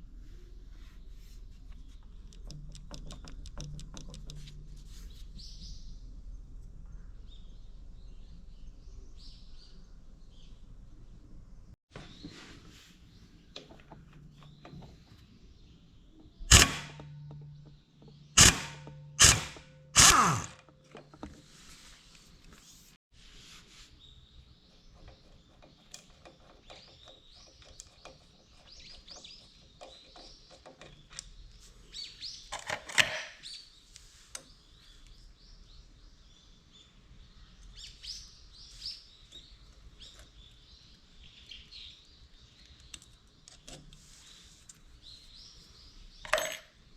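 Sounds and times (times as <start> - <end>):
birds chirping faintly: 0.0 - 19.2, 20.6 - 46.9.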